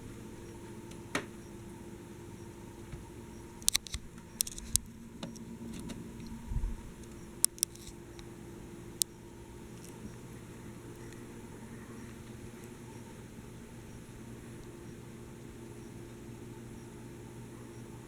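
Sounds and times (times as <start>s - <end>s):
ceiling fan humming: 0.0s - 18.0s
sharp clicks: 3.3s - 6.4s, 7.0s - 8.3s.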